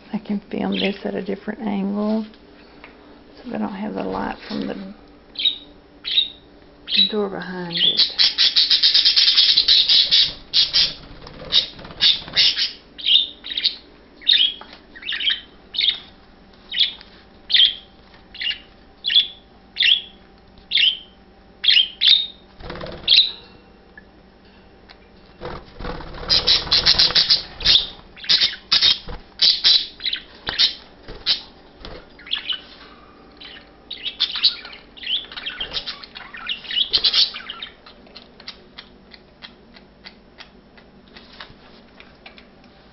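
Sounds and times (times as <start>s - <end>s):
budgerigars chirping: 5.4s - 16.1s, 16.7s - 22.4s, 23.0s - 23.5s, 26.1s - 31.5s, 32.2s - 32.7s, 33.4s - 38.6s.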